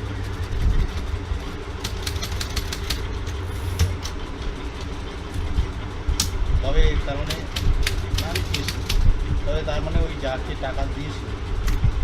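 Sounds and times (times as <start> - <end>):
steady low rumble: 0.0 - 12.0
typewriter keys clacking: 1.8 - 3.0, 7.3 - 9.0.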